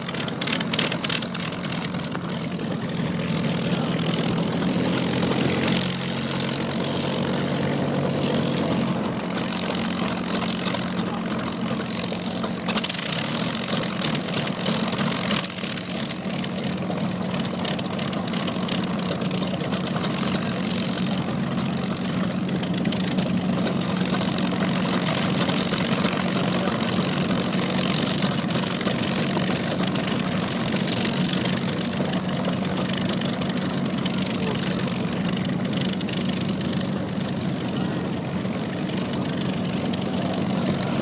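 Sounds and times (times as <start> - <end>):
engine running steadily: 0.0 - 41.0.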